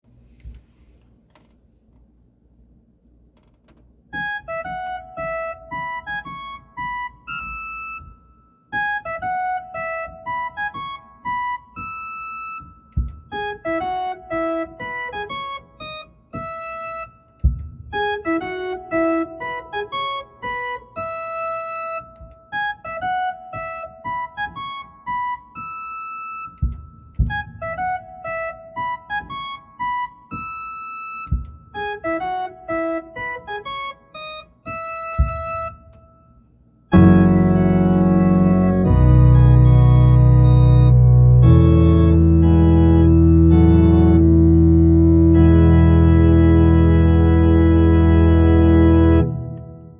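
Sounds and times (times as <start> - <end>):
organ playing ringtone melody: 4.2 - 36.2, 36.9 - 49.9
low thump: 35.2 - 35.8.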